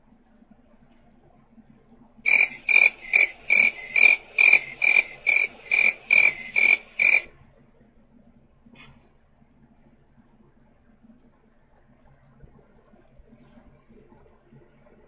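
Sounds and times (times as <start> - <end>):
cricket chirps over phone line: 2.3 - 7.3.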